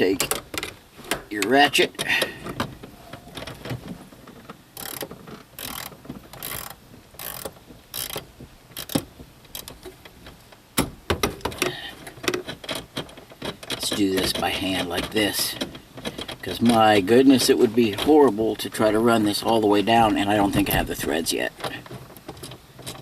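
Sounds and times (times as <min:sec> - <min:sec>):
irregular clicks and knocks: 0:00.0 - 0:23.0
hand ratchet clicking: 0:04.8 - 0:10.0.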